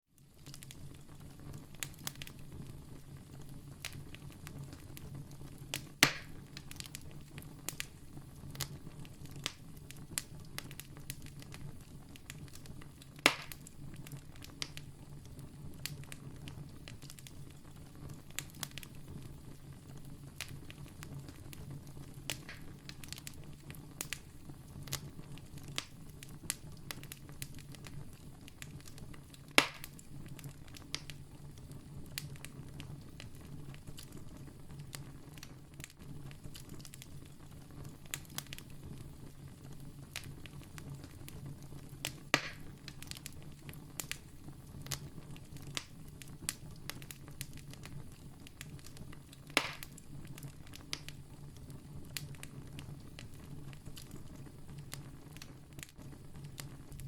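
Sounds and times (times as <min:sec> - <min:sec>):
low rumble of burning fire: 0:00.0 - 0:57.0
campfire crackling: 0:00.2 - 0:57.0
loud fire pops: 0:00.4 - 0:57.0.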